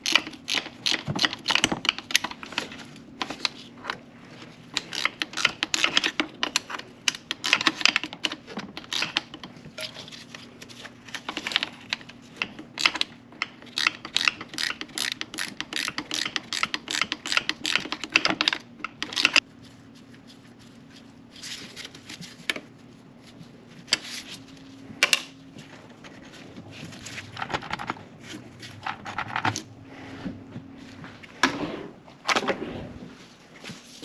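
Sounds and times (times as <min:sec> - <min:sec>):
faint steady hum: 0:00.0 - 0:34.0
hand ratchet clicking: 0:13.7 - 0:19.4.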